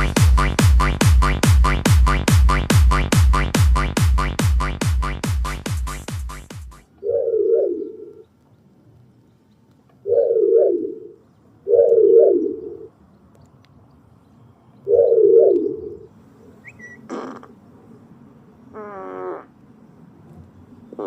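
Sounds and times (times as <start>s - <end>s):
pigeon-like coos: 7.0s - 8.2s, 10.0s - 12.9s, 14.9s - 17.6s.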